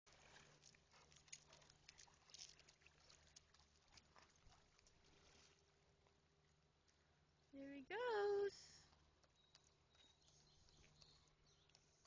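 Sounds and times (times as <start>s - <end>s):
small clicks and ticks: 8.8s - 12.0s.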